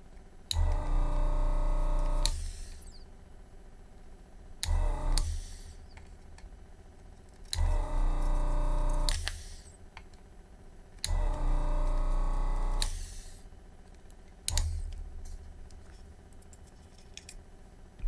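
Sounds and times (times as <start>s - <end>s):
vacuum pump humming: 0.5s - 3.1s, 4.6s - 5.8s, 7.5s - 9.6s, 11.0s - 13.5s.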